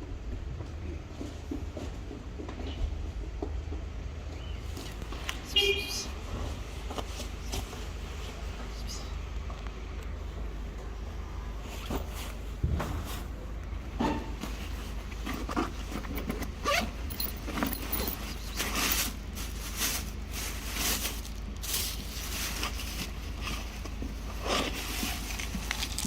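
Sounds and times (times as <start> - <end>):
short rustling and scraping: 11.6 - 26.0.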